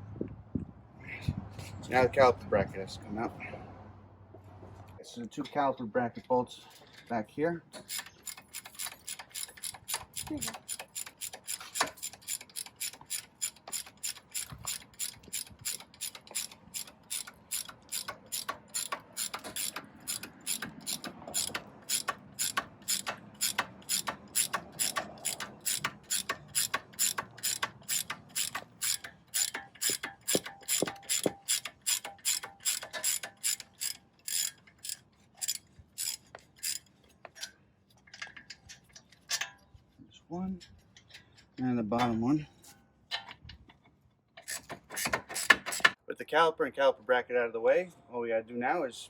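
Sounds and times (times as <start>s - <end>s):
ratchet wrench clicking: 7.8s - 37.5s.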